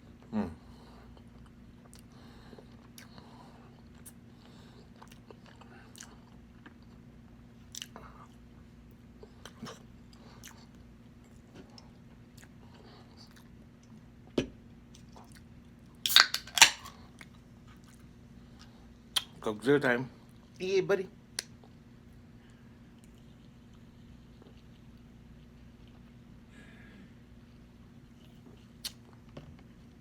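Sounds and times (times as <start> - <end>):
chewing and mouth smacks: 1.1 - 3.2, 3.8 - 19.4, 22.9 - 26.2, 28.1 - 30.0.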